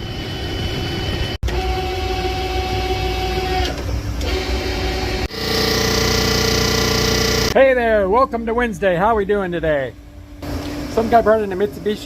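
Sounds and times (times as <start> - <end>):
small electric motor whining: 0.0 - 7.6.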